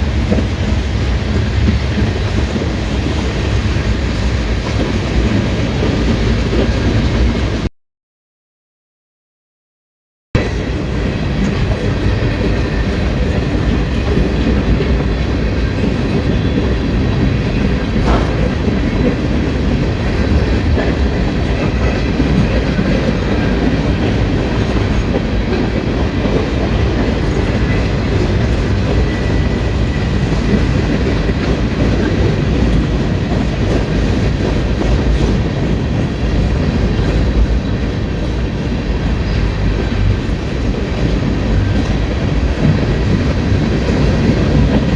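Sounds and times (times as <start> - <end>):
train wheels rumbling on rails: 0.0 - 7.7, 10.4 - 44.9
sharp knock: 18.0 - 19.0.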